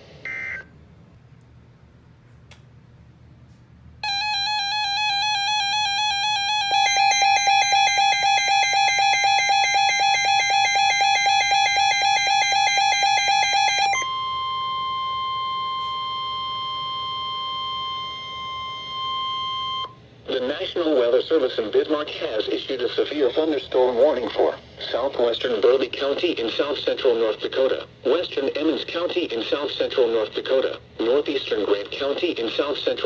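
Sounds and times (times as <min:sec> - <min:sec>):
steady alarm tone: 0:04.0 - 0:20.0
warbling pulsing alarm beep: 0:04.0 - 0:20.0.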